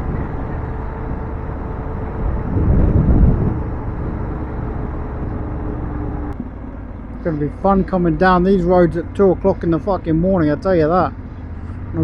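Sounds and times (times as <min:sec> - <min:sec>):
motorcycle engine hum: 0:00.0 - 0:12.0
wind and road noise: 0:00.0 - 0:12.0.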